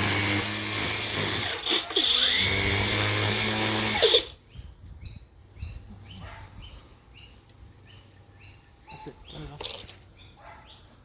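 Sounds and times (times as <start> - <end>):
power tool whine: 0.0 - 4.4
faint bird chirps: 4.4 - 10.9.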